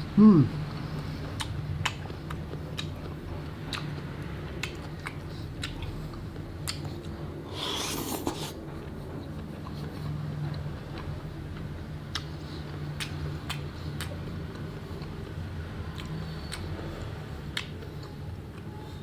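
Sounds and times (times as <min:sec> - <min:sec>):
noisy slurp: 0:07.5 - 0:08.6.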